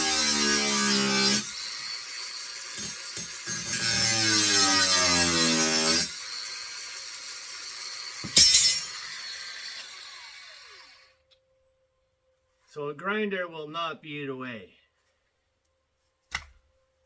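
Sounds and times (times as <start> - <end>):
angle grinder cutting metal: 0.0 - 11.1.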